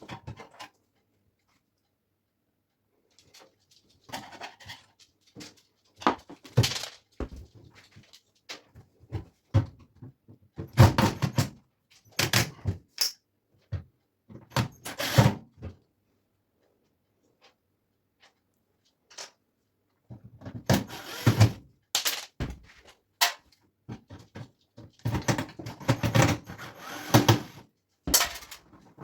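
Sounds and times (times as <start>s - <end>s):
knocks and clatters of tools: 3.4s - 15.8s, 20.1s - 29.0s.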